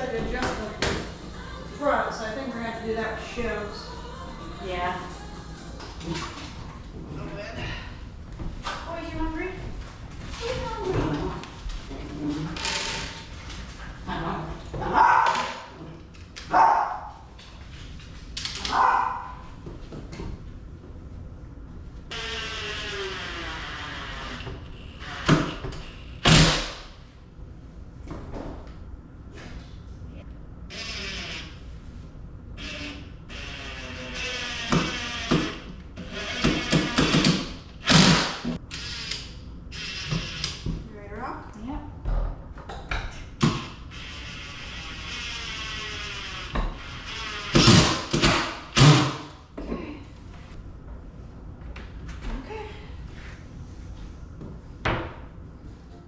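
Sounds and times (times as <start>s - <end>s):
power tool whirring: 22.1s - 25.6s, 30.7s - 31.6s, 32.6s - 40.6s, 43.5s - 49.1s.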